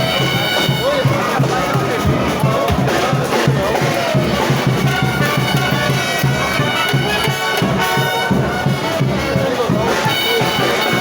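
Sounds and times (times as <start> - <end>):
brass instruments playing: 0.0 - 1.4, 3.8 - 11.0
quick drum beat: 0.0 - 11.0.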